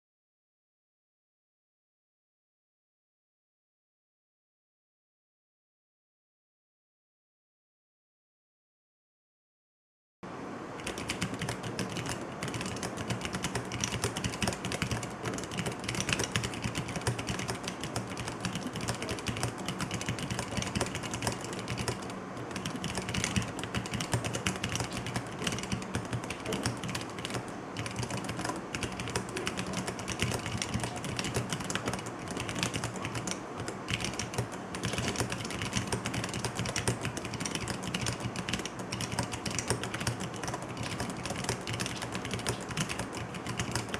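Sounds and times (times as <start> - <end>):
fast typing on mechanical keyboard: 10.8 - 43.9.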